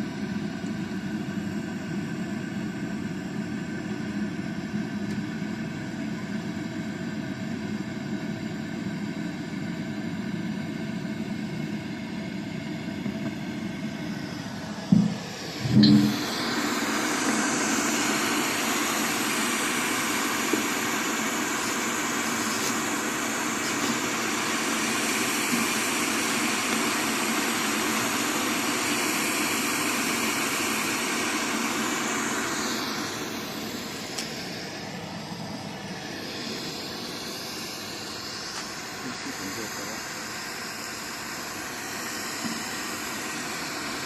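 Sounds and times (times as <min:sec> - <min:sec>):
thumps: 0:14.9 - 0:16.1.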